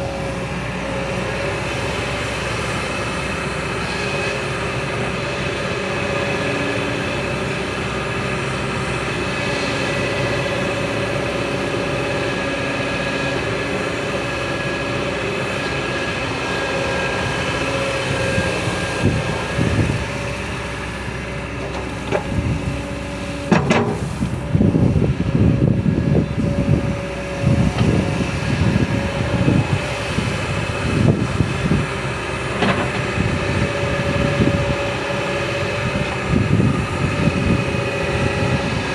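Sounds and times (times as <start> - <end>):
excavator engine running: 0.0 - 38.9
low rumbles and thumps: 19.0 - 38.3.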